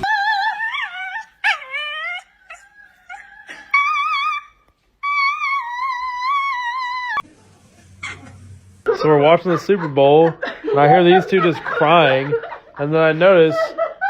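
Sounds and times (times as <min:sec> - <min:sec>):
dog howling: 0:00.0 - 0:07.3.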